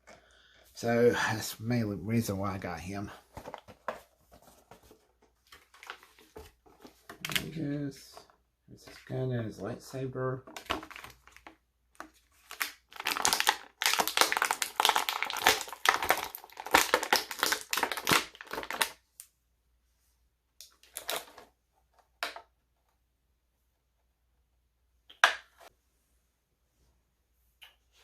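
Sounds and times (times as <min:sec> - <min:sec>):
plastic packaging crinkling: 0:10.6 - 0:19.0.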